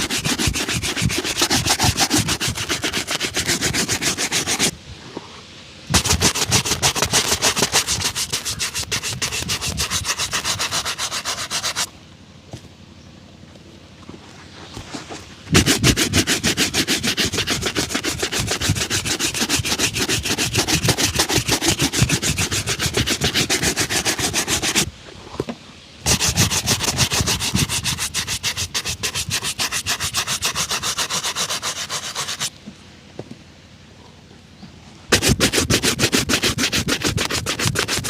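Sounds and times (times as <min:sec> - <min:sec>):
buffing strokes on leather shoe: 0:00.0 - 0:04.7, 0:05.9 - 0:11.9, 0:15.5 - 0:24.9, 0:26.1 - 0:32.5, 0:35.1 - 0:38.0.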